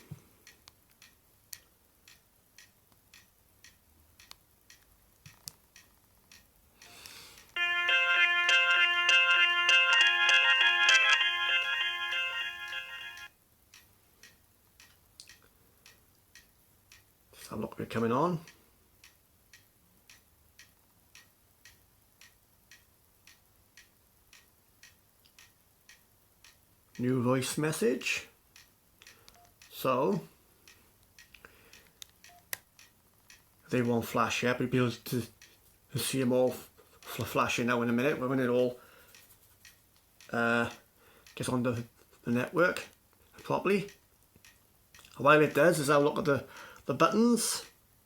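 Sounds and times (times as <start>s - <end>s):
faint regular ticking: 0.0s - 48.0s.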